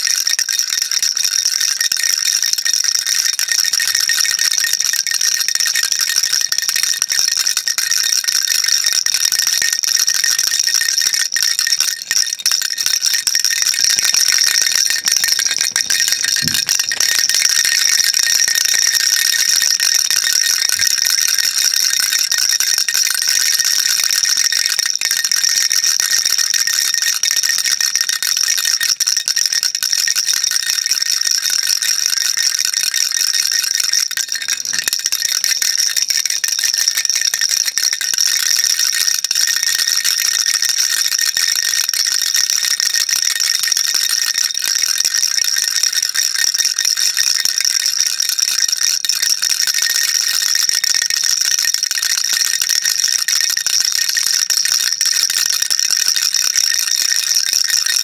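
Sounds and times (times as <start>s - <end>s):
baby rattle shaking: 0.9s - 28.6s, 29.2s - 38.4s.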